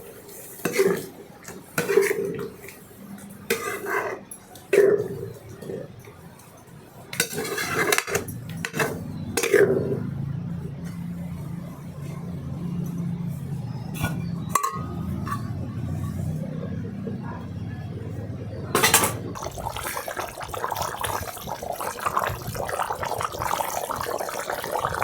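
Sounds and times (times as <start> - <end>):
metal kitchenware clinking: 14.0 - 16.4, 18.7 - 19.4.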